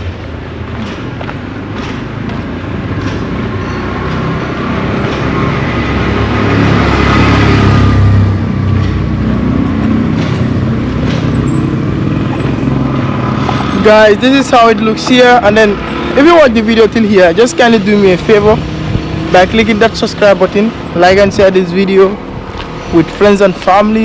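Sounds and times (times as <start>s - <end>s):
vehicle passing by: 0.0s - 24.0s.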